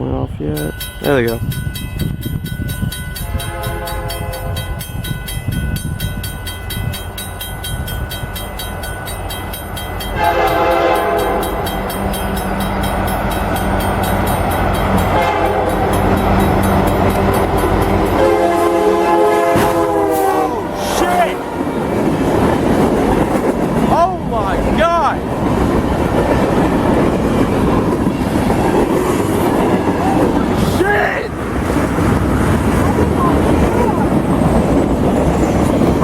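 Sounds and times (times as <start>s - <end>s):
train rumble: 0.0s - 36.0s
crossing signal bell ringing: 0.5s - 19.5s
train horn blasts: 3.2s - 4.8s, 10.1s - 12.6s, 14.9s - 22.0s.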